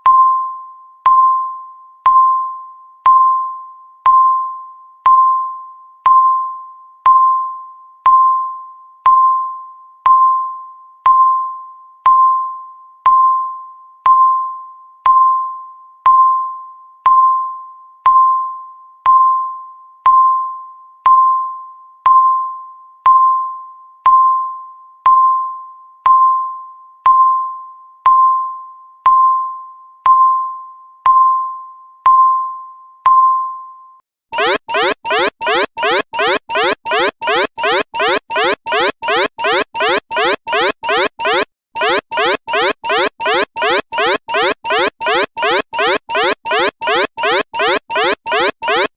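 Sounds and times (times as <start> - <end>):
countdown timer beeping: 34.4 - 48.9.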